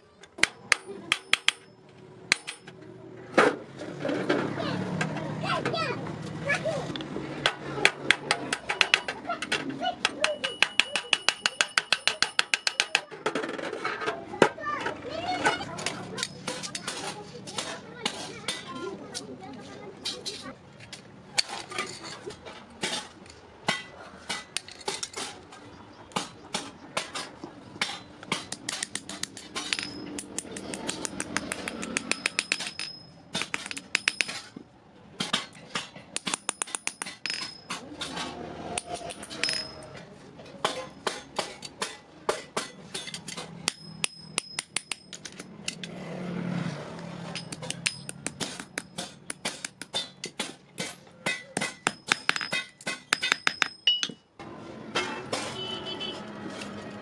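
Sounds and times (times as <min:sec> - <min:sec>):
hammer striking iron: 0:00.4 - 0:01.7, 0:02.3 - 0:02.7, 0:10.0 - 0:13.1, 0:26.2 - 0:34.5, 0:35.2 - 0:37.8, 0:38.8 - 0:39.8, 0:40.6 - 0:45.9, 0:47.2 - 0:54.3.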